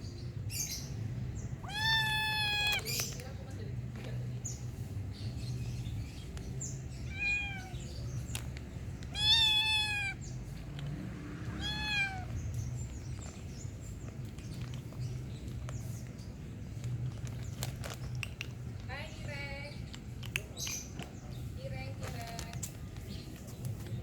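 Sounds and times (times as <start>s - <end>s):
kitten meowing: 1.6s - 3.1s, 7.0s - 8.0s, 9.1s - 10.2s, 11.5s - 12.4s.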